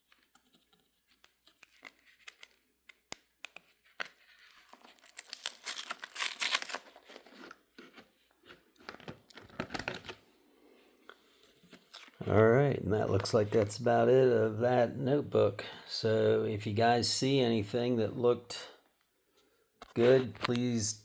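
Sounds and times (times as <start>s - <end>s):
notebook pages rustling: 0.0s - 2.7s, 3.5s - 10.3s.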